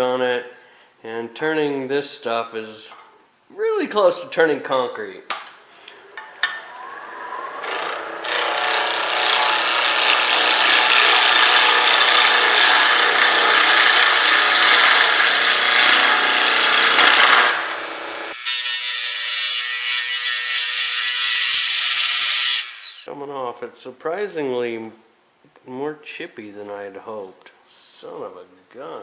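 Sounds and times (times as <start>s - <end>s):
lathe gouge scraping wood: 7.6s - 23.1s.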